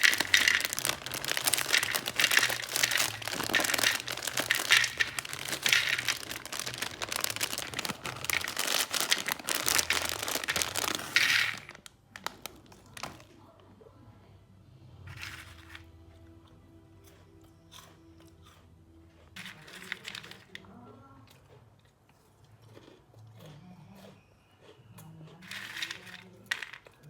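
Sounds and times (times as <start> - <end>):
snack packaging crinkling: 0.0 - 13.3, 19.4 - 20.7, 25.4 - 27.0.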